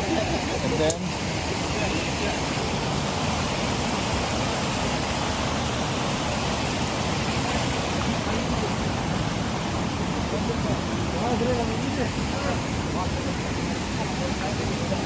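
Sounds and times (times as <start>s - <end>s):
waterfall roaring: 0.0s - 15.0s.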